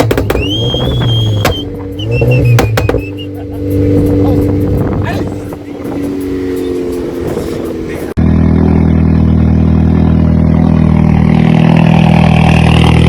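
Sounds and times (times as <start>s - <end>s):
car engine at high revs: 0.0s - 13.0s
engine revs dropping: 0.0s - 13.0s
faint engine whine: 0.0s - 13.0s.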